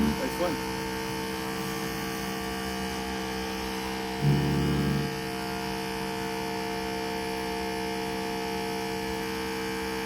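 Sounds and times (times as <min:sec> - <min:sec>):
low-pitched drone: 0:00.0 - 0:00.5, 0:04.1 - 0:05.3
pressure washer droning: 0:00.0 - 0:05.8.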